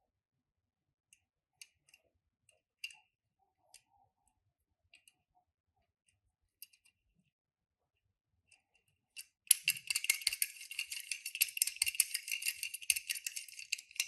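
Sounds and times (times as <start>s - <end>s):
toy car and packaging clicks: 9.2s - 14.0s.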